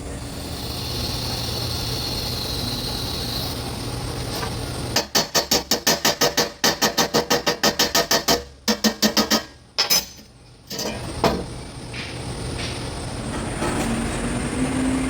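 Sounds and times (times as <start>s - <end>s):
welding arc buzzing hiss: 0.0s - 9.6s.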